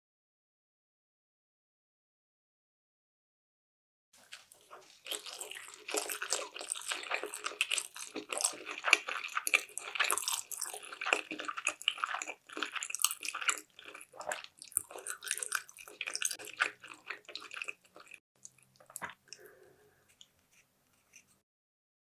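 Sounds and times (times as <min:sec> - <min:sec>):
wet chewing and mouth sounds: 0:04.2 - 0:21.4.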